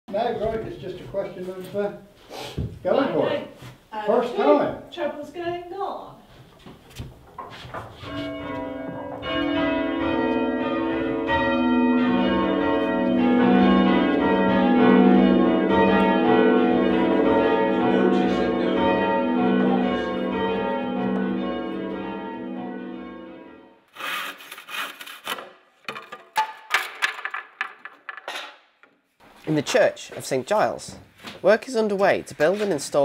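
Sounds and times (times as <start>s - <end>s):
sharp knocks and scrapes: 6.4s - 9.4s
church bells ringing changes: 8.0s - 23.9s.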